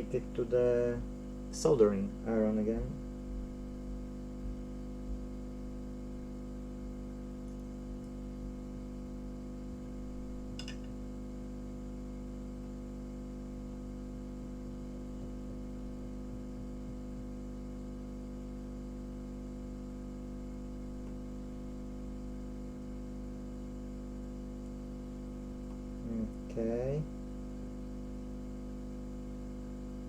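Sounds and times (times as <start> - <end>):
electrical hum: 0.0 - 30.0.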